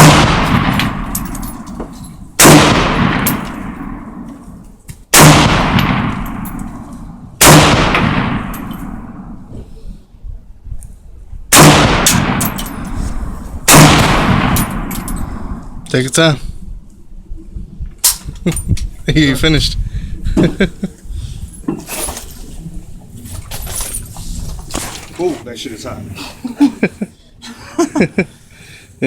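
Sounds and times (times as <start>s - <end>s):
rifle shots echoing: 0.0s - 1.8s, 2.4s - 4.4s, 5.1s - 9.4s, 11.5s - 13.0s, 13.6s - 15.8s.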